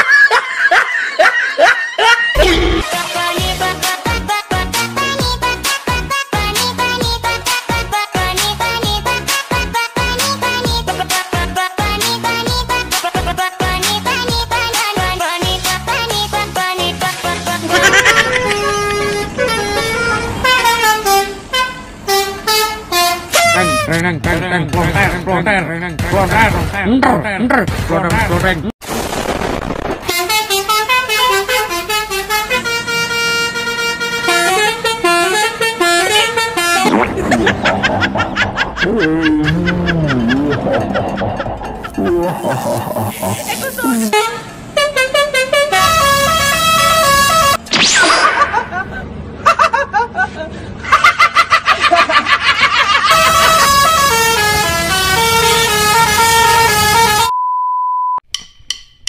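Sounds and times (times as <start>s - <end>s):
musical bus horn playing tune: 2.8s - 14.8s, 15.6s - 24.1s, 30.0s - 37.1s, 43.7s - 47.7s, 53.1s - 57.4s
steady beep: 57.3s - 58.2s.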